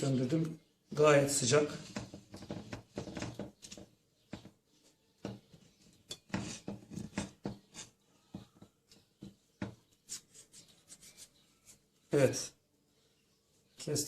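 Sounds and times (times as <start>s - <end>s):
knife scraping a pot: 5.3s - 9.0s.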